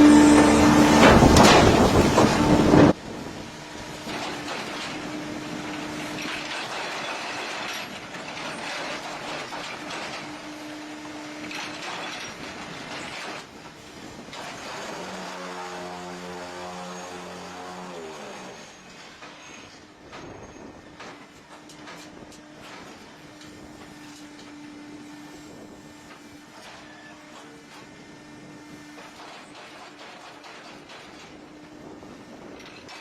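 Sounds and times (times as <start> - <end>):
motor hum winding down: 0.0 - 3.0
machine noise burst: 0.0 - 3.2
mechanical clatter: 0.0 - 15.7, 28.7 - 33.0.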